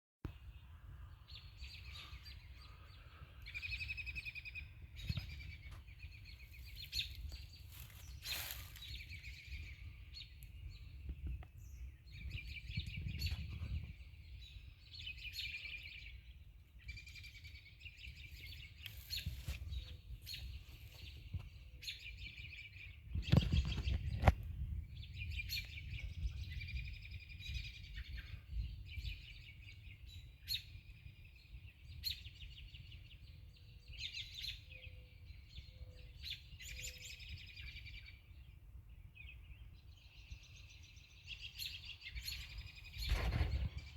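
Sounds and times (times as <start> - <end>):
birds chirping trills: 0.4 - 24.3.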